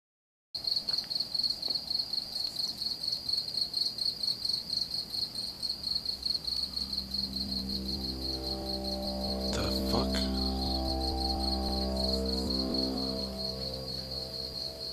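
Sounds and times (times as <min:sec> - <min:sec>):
crickets chirping: 0:00.6 - 0:14.9
low droning hum: 0:06.1 - 0:14.9.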